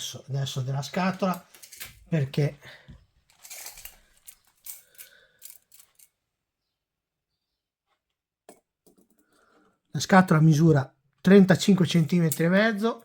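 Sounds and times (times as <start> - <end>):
handling clicks and scrapes: 3.3 - 6.2.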